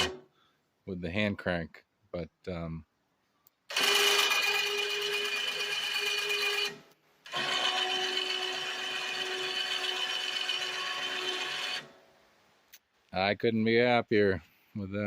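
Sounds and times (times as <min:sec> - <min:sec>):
electric winch motor whining: 0:00.0 - 0:00.2, 0:03.7 - 0:11.9.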